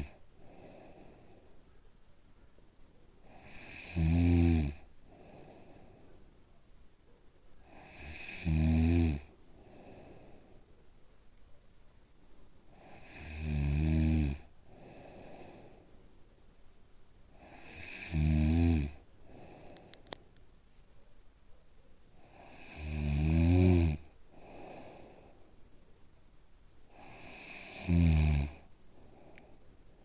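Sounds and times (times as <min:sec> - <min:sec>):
soft breathing: 0:00.0 - 0:03.8, 0:04.8 - 0:08.3, 0:09.3 - 0:11.6, 0:14.4 - 0:16.4, 0:18.9 - 0:23.0, 0:24.0 - 0:26.1, 0:26.8 - 0:30.0
person snoring: 0:03.3 - 0:04.8, 0:07.7 - 0:09.3, 0:12.8 - 0:14.5, 0:17.4 - 0:19.0, 0:22.3 - 0:24.9, 0:27.0 - 0:28.6.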